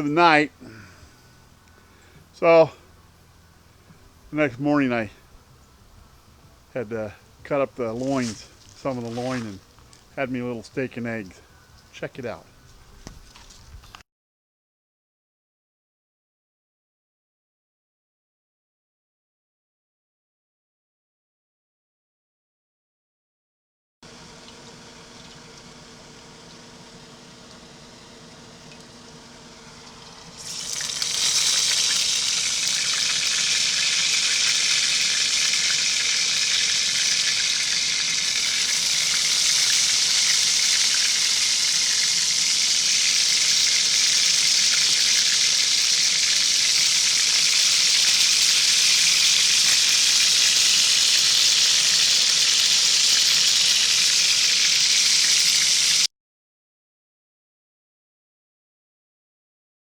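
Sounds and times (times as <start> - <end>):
food sizzling in grease: 7.9 - 10.2, 24.1 - 56.1.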